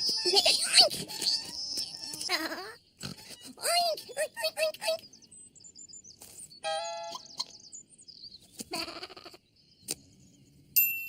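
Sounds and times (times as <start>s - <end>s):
light cartoon music: 6.6s - 7.6s
bleat-like animal cry: 8.7s - 9.4s.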